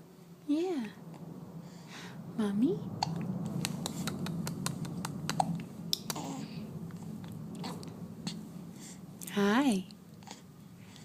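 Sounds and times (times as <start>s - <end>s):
small sharp clicks and smacks: 3.2s - 6.2s.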